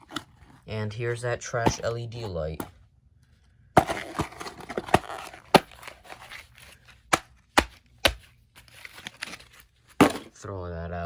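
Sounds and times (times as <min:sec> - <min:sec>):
rustling: 0:01.6 - 0:10.4.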